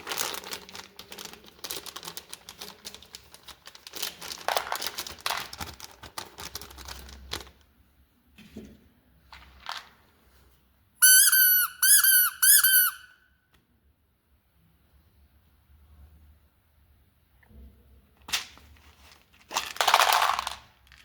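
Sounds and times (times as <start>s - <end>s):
loud high-pitched squeaks: 11.0s - 13.2s.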